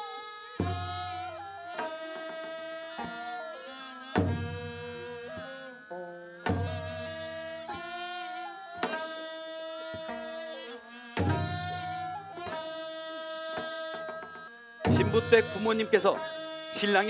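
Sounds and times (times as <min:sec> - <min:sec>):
deep drum strokes: 0:14.9 - 0:15.7.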